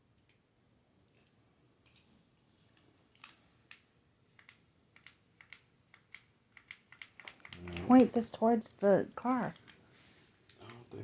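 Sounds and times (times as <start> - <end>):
faint plastic clicks: 0.1 - 8.0.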